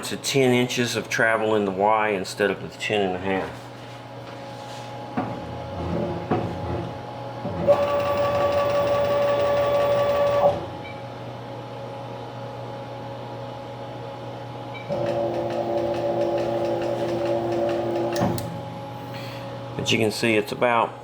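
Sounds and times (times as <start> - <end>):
stepper motor whine: 7.6 - 10.7.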